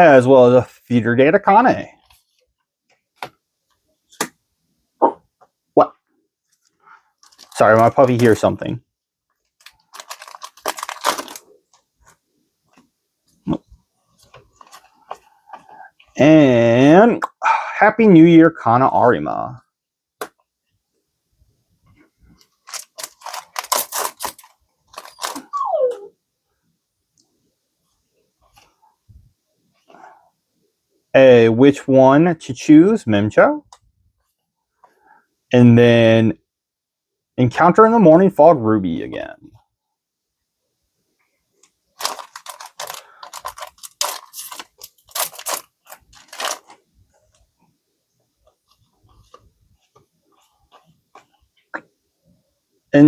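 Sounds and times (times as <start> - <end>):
trading cards rustling and snapping: 4.1 - 4.4, 7.2 - 8.4, 9.4 - 12.9, 14.2 - 15.8, 22.3 - 25.5, 41.6 - 47.5
foil pack crinkling and tearing: 7.2 - 8.4, 9.6 - 11.8, 22.6 - 25.5, 42.0 - 46.8.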